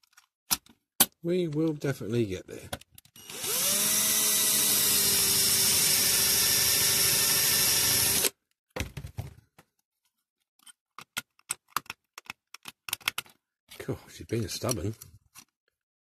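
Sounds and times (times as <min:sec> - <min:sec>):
electric drill running: 0:03.2 - 0:08.3.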